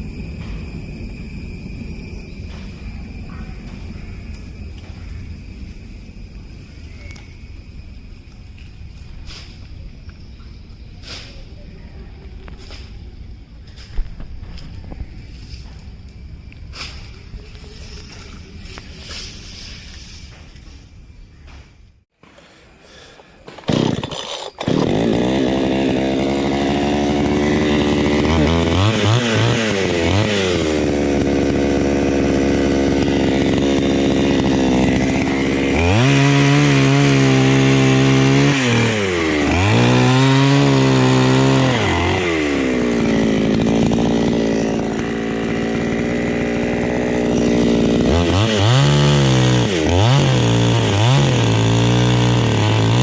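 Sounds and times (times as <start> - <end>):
chainsaw cutting wood: 23.0 - 53.0.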